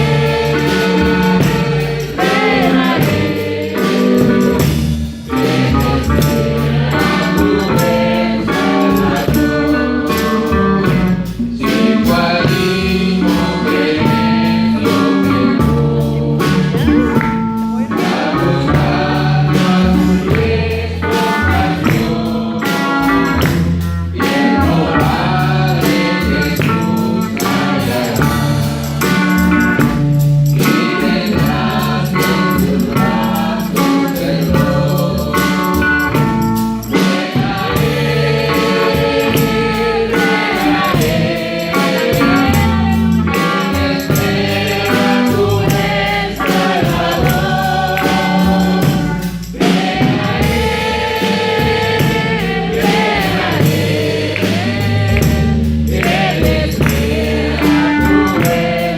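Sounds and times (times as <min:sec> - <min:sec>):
instrumental accompaniment: 0:00.0 - 0:58.9
men's group singing a hymn: 0:00.0 - 0:58.9.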